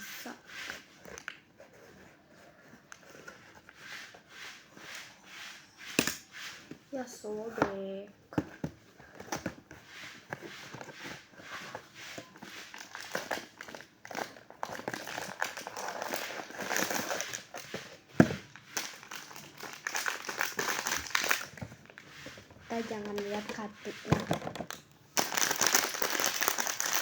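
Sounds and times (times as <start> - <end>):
plastic packaging crinkling and tearing: 12.3 - 22.1, 24.7 - 27.0.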